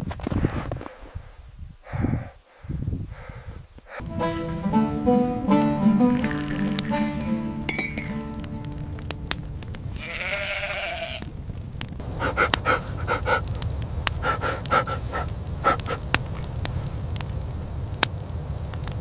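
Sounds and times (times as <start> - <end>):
sheep and goats bleating: 6.2 - 7.2, 9.9 - 11.3
steady low rumble: 8.4 - 10.0, 11.3 - 19.0.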